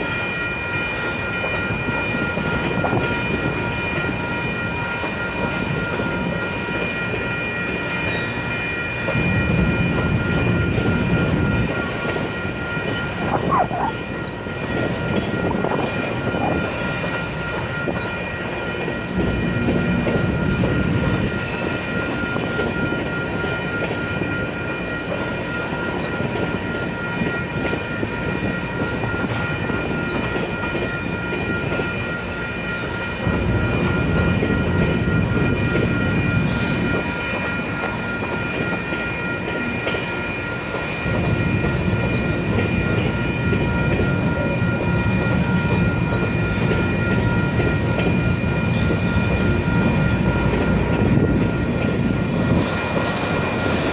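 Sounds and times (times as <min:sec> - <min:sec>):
clickety-clack over rail joints: 0:00.0 - 0:53.9
freight train wheels rumbling: 0:00.0 - 0:53.9
steady high-pitched tones: 0:00.0 - 0:53.9.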